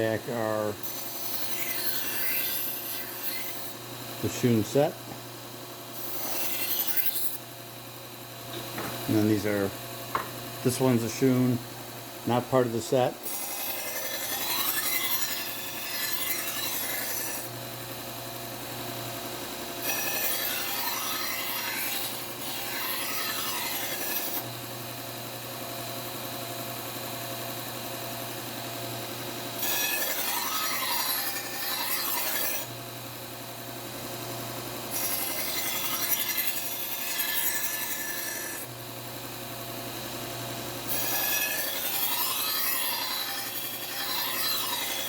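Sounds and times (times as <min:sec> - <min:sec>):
knife grinding on sanding belt: 0:00.1 - 0:04.9, 0:05.9 - 0:07.4, 0:12.3 - 0:17.5, 0:19.8 - 0:24.5, 0:29.6 - 0:32.7, 0:34.9 - 0:38.7, 0:40.9 - 0:45.0.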